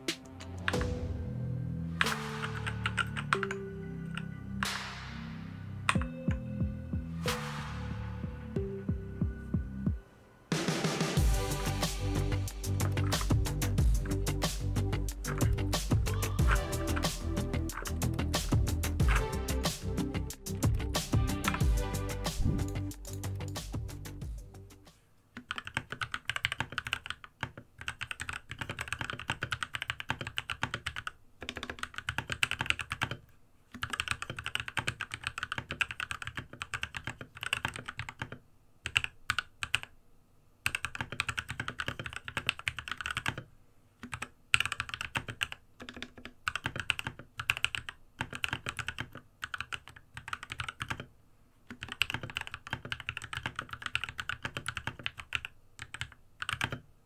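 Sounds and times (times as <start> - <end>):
fast typing on keyboard: 2.0 - 3.6, 12.7 - 14.4, 15.0 - 19.2, 25.4 - 39.9, 40.6 - 51.1, 51.7 - 56.8.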